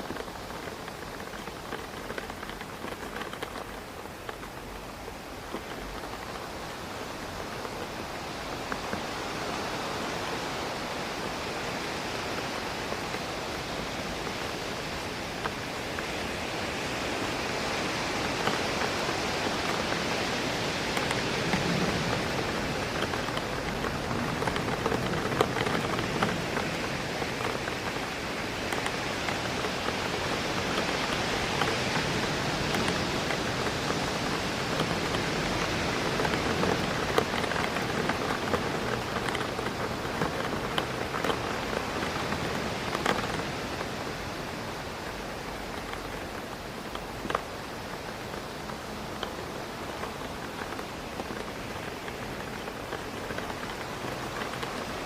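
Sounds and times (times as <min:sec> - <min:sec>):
rain hitting a window: 0:00.0 - 0:55.0
wind in trees: 0:00.0 - 0:55.0
raindrops tapping glass: 0:18.2 - 0:44.0.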